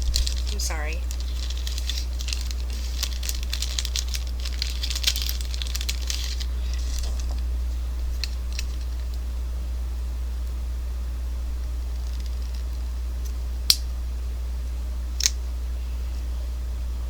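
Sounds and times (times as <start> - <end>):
small plastic parts clicking: 0.0 - 6.5
crinkles: 0.0 - 9.3, 11.6 - 13.4
steady low hum: 0.0 - 17.0.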